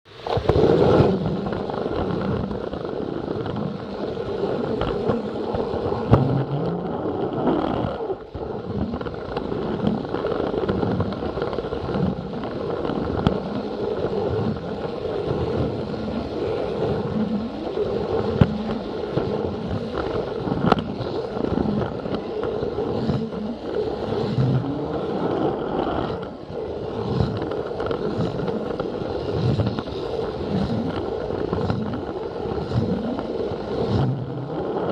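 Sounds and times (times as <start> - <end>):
wheels clicking over plastic track: 0.1 - 34.9
toy train motor and gears: 0.2 - 34.9.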